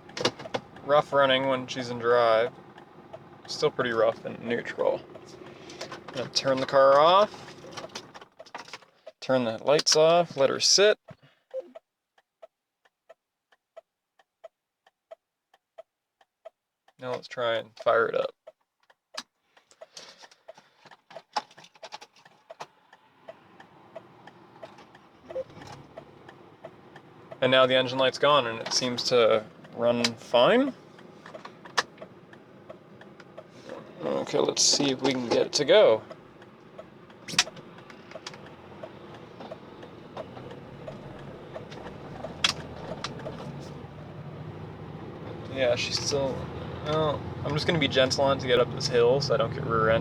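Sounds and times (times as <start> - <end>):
flasher relay ticking: 0.0 - 9.2, 22.2 - 44.2
car engine running: 0.0 - 10.6, 22.2 - 50.0
sharp clicks: 18.8 - 44.0
sharp clicks of key and controls: 34.7 - 43.6.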